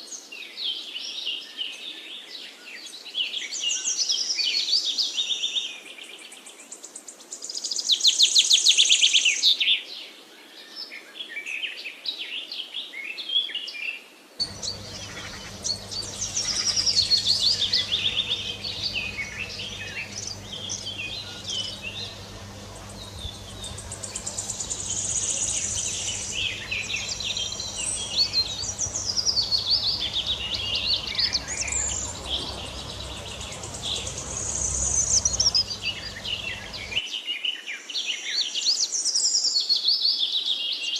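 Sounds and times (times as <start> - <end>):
low steady hum: 14.4 - 37.0
small birds chirping: 14.4 - 37.0.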